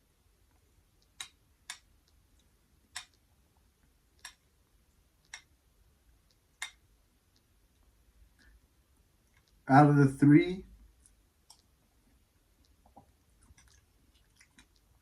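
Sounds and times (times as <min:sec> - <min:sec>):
mouth and utensil clicks: 0:01.0 - 0:03.2, 0:04.2 - 0:04.5, 0:05.2 - 0:05.6, 0:06.2 - 0:07.5, 0:11.0 - 0:11.7.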